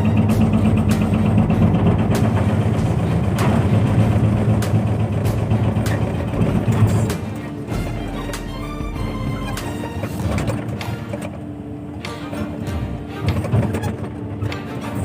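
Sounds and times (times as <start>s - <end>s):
sharp knocks: 0.0s - 11.3s
diesel engine running: 0.0s - 15.0s.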